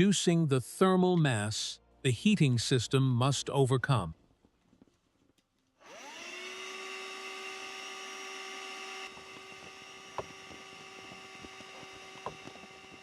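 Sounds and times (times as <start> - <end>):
electric motor whine: 5.8 - 13.0.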